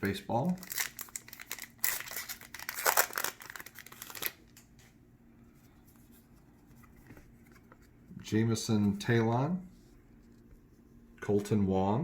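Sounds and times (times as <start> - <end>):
faint handling of cards: 0.0 - 11.7
wrapper tearing and crinkling: 0.5 - 4.6.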